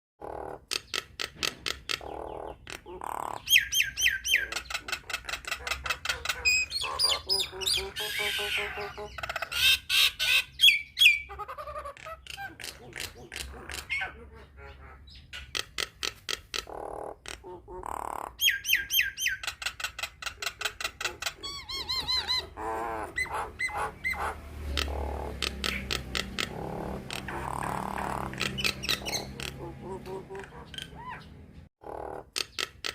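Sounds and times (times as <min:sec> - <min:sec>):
bird harsh squawks: 0:02.0 - 0:31.4
bird clicking notes: 0:24.7 - 0:27.4, 0:32.3 - 0:32.9.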